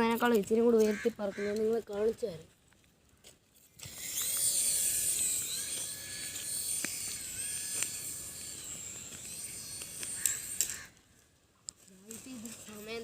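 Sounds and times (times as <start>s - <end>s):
toy helicopter rotors whining: 3.5s - 13.0s.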